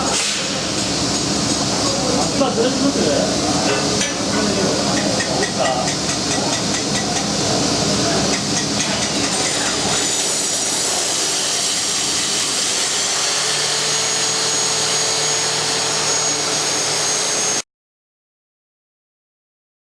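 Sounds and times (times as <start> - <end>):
power drill drilling concrete: 8.3 - 17.6.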